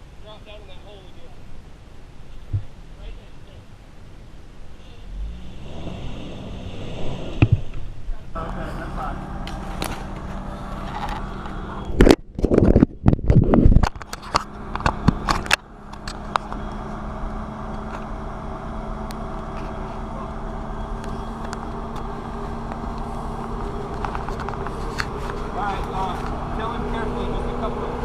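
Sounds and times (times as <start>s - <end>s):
off-road vehicle engine running: 4.9s - 28.0s
rustling: 20.6s - 26.5s.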